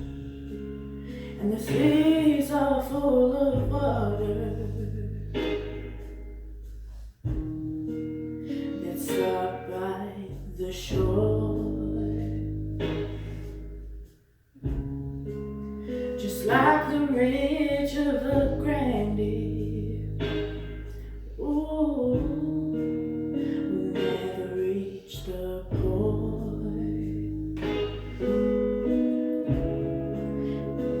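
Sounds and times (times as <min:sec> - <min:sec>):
guitar: 0:00.0 - 0:31.0
person singing: 0:01.1 - 0:05.6, 0:08.8 - 0:12.4, 0:16.2 - 0:20.5, 0:21.4 - 0:27.3.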